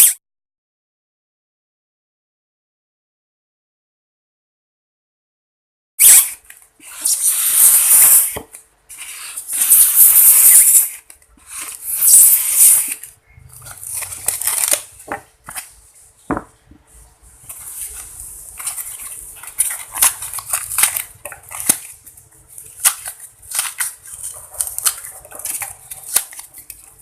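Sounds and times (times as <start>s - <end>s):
rustling scraping bursts: 16.9s - 27.0s.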